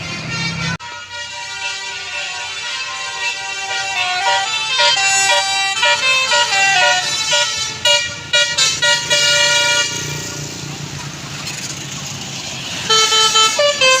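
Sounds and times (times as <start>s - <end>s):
multi-tone bus horn melody: 0.0s - 10.5s, 12.6s - 14.0s.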